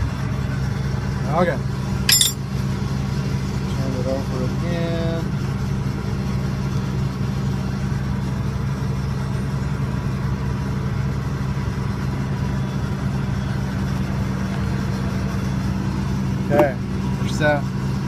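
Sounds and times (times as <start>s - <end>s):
diesel engine idling: 2.6s - 18.0s.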